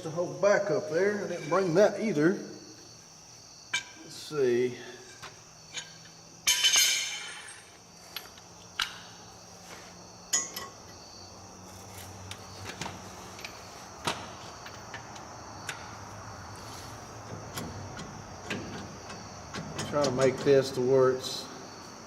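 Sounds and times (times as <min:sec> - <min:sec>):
crickets chirping: 0:00.0 - 0:22.0
metal tools clinking: 0:01.2 - 0:01.8, 0:05.0 - 0:08.4, 0:10.3 - 0:10.9
rattling metallic clatter: 0:05.1 - 0:07.8, 0:17.2 - 0:20.8
sharp clicks and knocks: 0:17.2 - 0:20.8.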